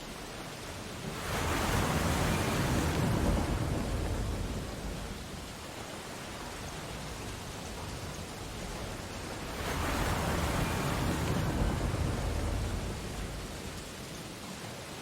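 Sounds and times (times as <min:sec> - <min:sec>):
wave breaking: 0:01.0 - 0:05.5, 0:07.8 - 0:14.0.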